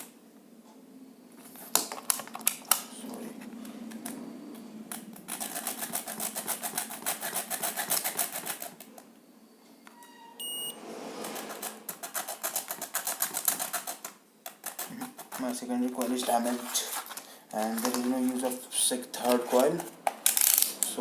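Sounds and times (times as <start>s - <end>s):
rapid clicks and scratches: 4.9s - 8.9s, 11.2s - 21.0s
short high electronic beep: 10.0s - 10.8s.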